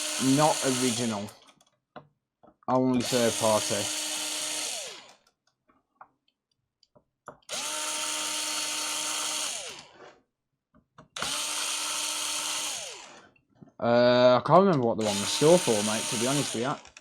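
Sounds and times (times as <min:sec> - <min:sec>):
electric screwdriver whirring: 0:00.0 - 0:01.4, 0:03.0 - 0:05.3, 0:07.4 - 0:10.2, 0:11.2 - 0:13.3, 0:15.0 - 0:17.0.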